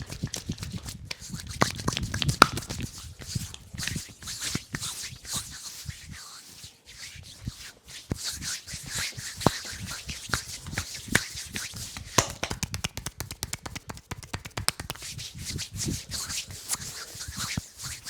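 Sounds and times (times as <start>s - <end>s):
sharp percussive massage taps: 11.9s - 15.2s.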